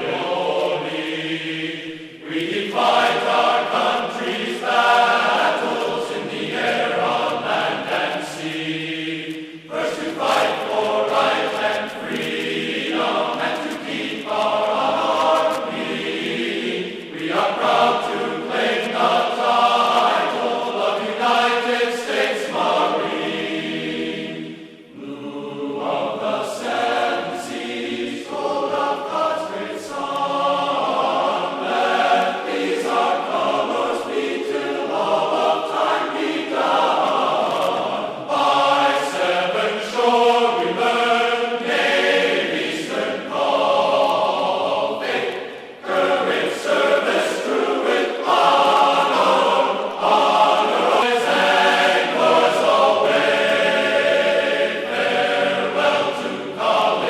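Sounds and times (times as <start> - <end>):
choir singing sustained phrases: 0.0 - 57.0.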